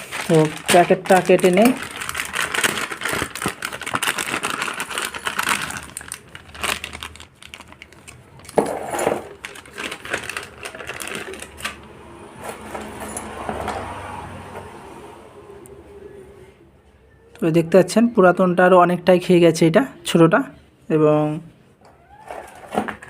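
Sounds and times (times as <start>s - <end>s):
plastic packaging crinkling: 0.0s - 11.9s.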